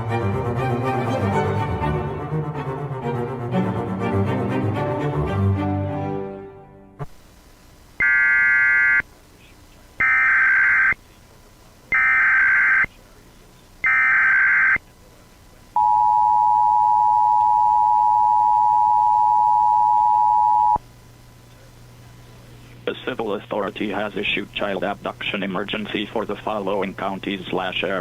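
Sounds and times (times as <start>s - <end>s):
screeching digital data bursts: 8.0s - 9.0s, 10.0s - 11.0s, 12.0s - 12.9s, 13.8s - 14.8s
two-tone attention signal: 15.8s - 20.8s.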